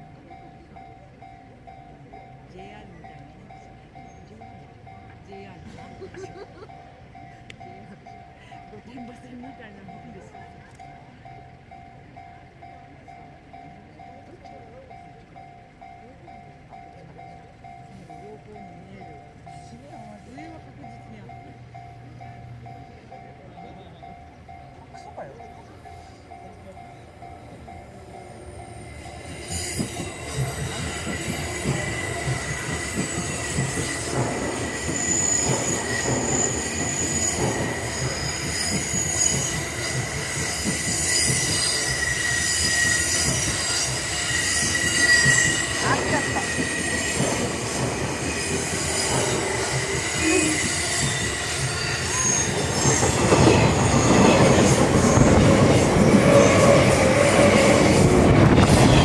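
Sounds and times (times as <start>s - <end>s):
train cars rumbling: 0.0s - 59.0s
train wheels squealing: 25.9s - 59.0s.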